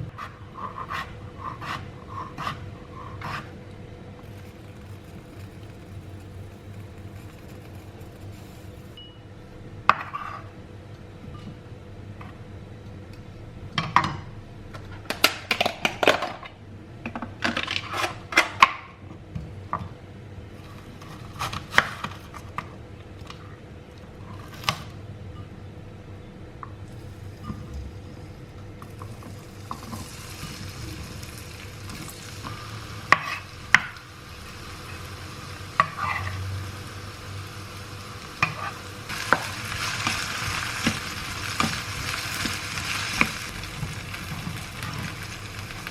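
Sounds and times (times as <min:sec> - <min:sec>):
utensil scraping a pan: 0:00.1 - 0:03.5, 0:04.2 - 0:09.0, 0:32.4 - 0:34.0, 0:35.8 - 0:36.5
frying sizzle: 0:04.2 - 0:09.0, 0:26.9 - 0:45.9.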